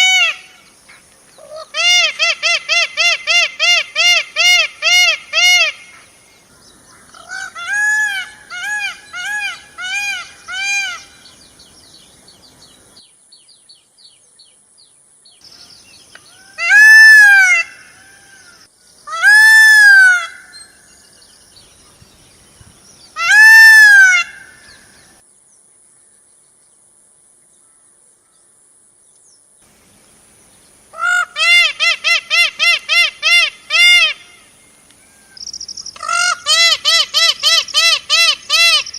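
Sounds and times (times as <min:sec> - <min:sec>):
bird calling: 0:00.0 - 0:13.0, 0:30.9 - 0:38.9.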